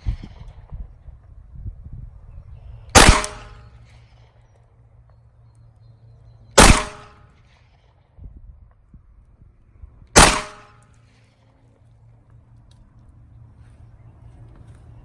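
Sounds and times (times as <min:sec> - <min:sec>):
pistol shots: 0:03.0 - 0:03.8, 0:06.6 - 0:07.3, 0:10.2 - 0:10.8.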